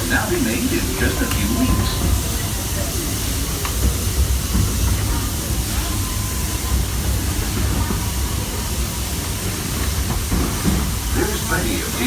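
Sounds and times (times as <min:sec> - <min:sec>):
steam hiss: 0:00.0 - 0:12.0
steam train rumble: 0:00.0 - 0:12.0.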